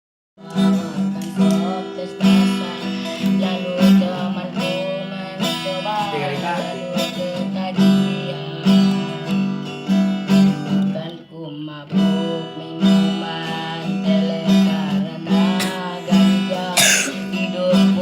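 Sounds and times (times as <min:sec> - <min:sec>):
acoustic guitar strumming: 0:00.4 - 0:18.0.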